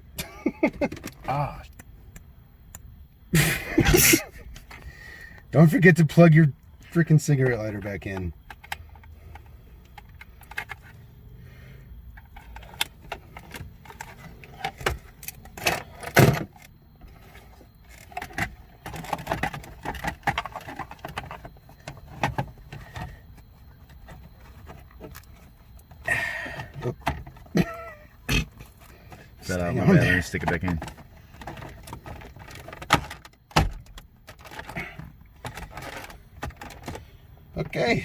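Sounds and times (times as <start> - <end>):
car interior trim clicks and rattles: 7.2 - 11.0, 12.1 - 27.7, 28.6 - 37.0.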